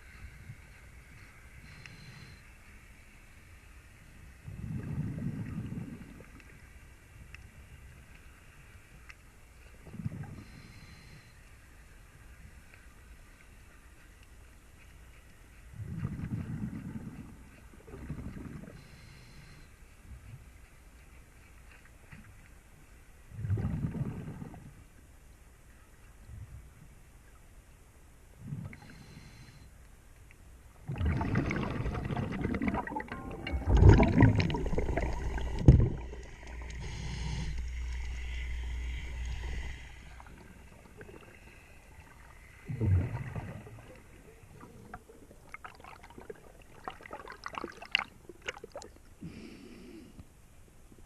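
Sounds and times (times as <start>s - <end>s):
underwater breath bubbles: 23.4s - 24.7s, 30.9s - 50.0s.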